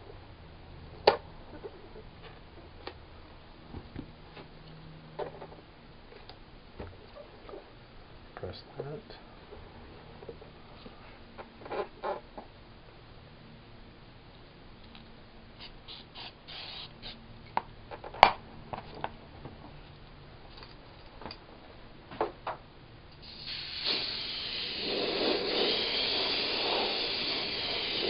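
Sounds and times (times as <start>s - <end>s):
aerosol can spraying hiss: 15.6s - 17.2s, 23.2s - 28.0s.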